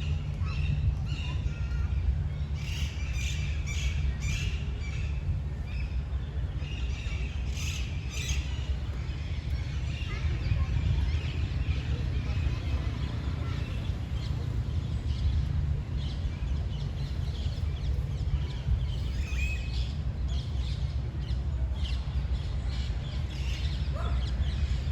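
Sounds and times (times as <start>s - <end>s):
wind rumble on microphone: 0.0s - 24.9s.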